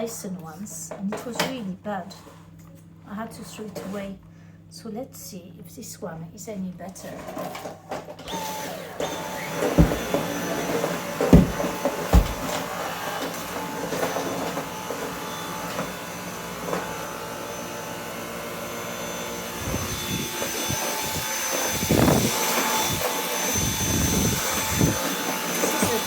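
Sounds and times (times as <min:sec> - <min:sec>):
vacuum cleaner motor whine: 0:07.2 - 0:26.0
low thuds and scuffs: 0:09.8 - 0:10.3, 0:11.3 - 0:12.6.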